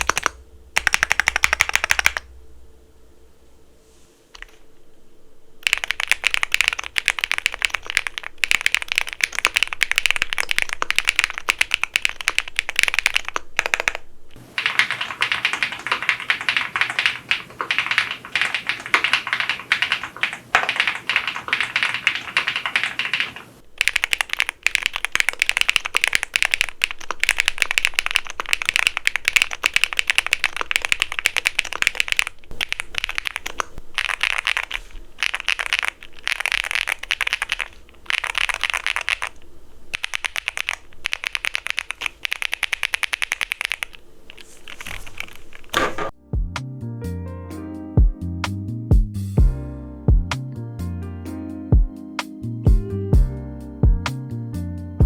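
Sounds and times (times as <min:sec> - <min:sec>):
mechanical keyboard typing: 0:00.0 - 0:02.2, 0:05.6 - 0:46.1
faint low hum: 0:00.0 - 0:46.1.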